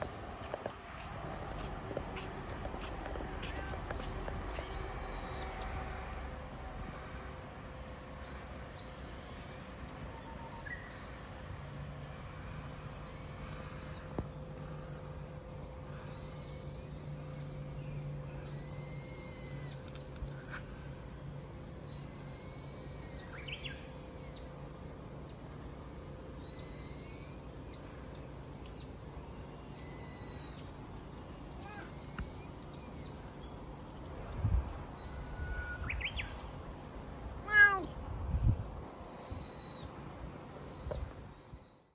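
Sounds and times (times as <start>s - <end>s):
birds singing: 1.4s - 2.5s, 4.5s - 5.9s, 8.2s - 11.3s, 12.9s - 41.9s
cat meowing: 37.4s - 38.0s.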